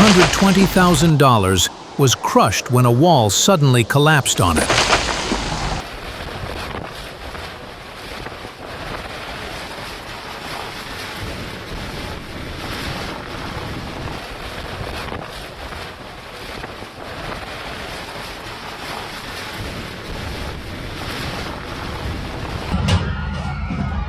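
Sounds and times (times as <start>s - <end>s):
wind buffeting microphone: 4.6s - 7.6s.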